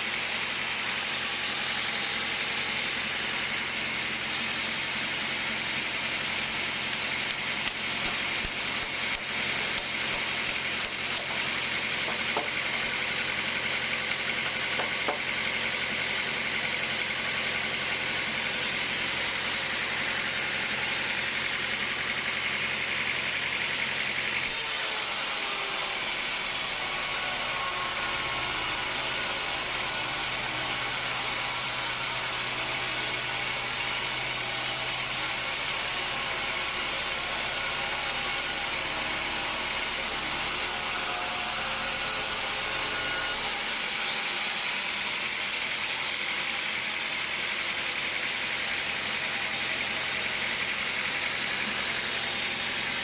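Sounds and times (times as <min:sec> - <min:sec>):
sawmill machinery running: 0:00.0 - 0:53.0.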